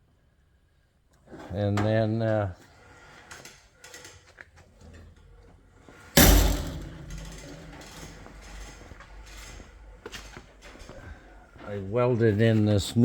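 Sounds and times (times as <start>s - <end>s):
loud slam ringing out: 6.2s - 8.5s.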